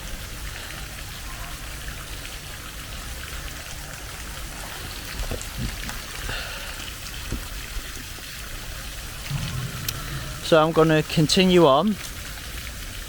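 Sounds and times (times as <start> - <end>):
faint water drips: 0.0 - 13.0
light rain hissing: 4.6 - 12.4.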